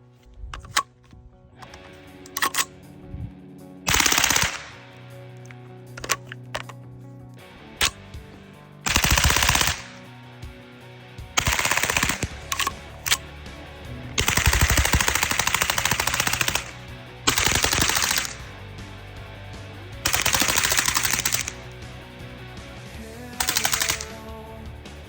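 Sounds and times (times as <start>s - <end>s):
airsoft rifle full-auto bursts: 3.9s - 5.0s, 8.8s - 10.0s, 11.4s - 13.3s, 14.2s - 18.6s, 20.0s - 21.7s, 23.4s - 24.3s.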